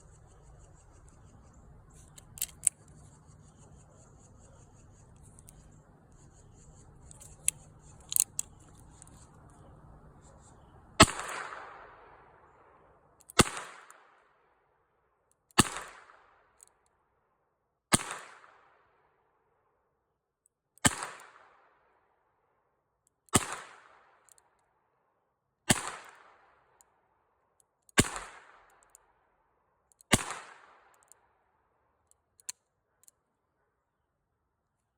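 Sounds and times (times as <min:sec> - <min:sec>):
sharp metallic clicks: 0:00.0 - 0:11.6
revolver gunshots: 0:11.0 - 0:12.6, 0:13.4 - 0:14.0, 0:30.1 - 0:30.8.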